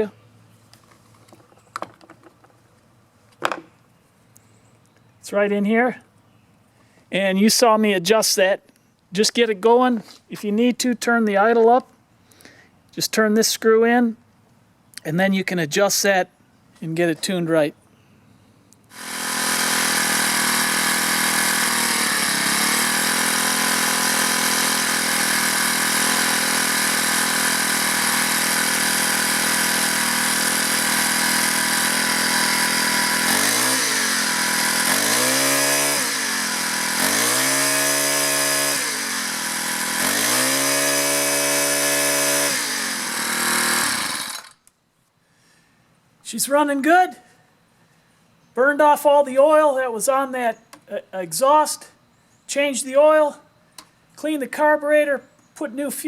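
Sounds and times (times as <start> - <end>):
string trimmer engine revving: 18.9 - 44.6.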